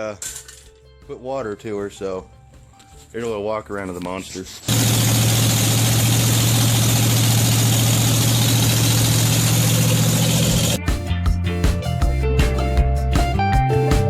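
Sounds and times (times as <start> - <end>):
car engine idling: 4.7 - 10.8.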